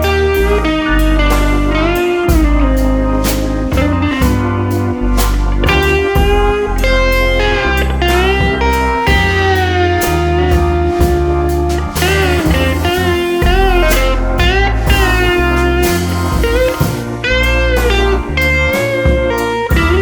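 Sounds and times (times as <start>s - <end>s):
guitar melody with bending notes: 0.0s - 20.0s
low bass notes: 0.0s - 20.0s.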